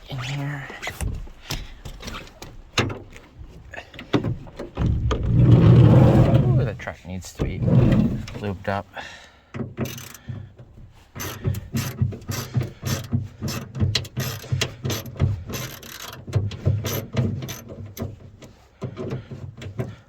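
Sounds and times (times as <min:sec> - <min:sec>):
ratchet wrench clicking: 0:09.8 - 0:10.2, 0:11.2 - 0:16.2.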